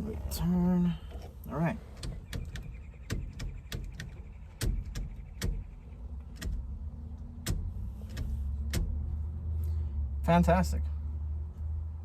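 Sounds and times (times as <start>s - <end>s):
plastic parts clicking and knocking: 2.0s - 9.0s.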